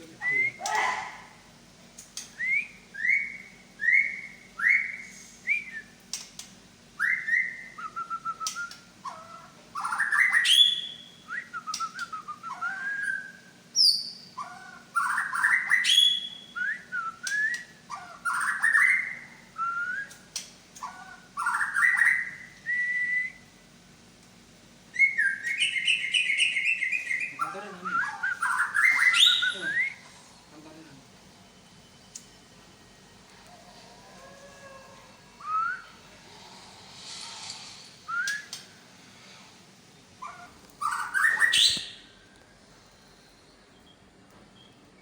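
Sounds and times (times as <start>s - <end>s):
bird singing whistled phrases: 2.4s - 5.9s, 7.0s - 9.2s, 9.8s - 14.4s, 15.0s - 20.2s, 21.4s - 23.4s, 24.9s - 30.0s, 35.4s - 35.9s, 38.1s - 38.6s, 40.8s - 42.1s.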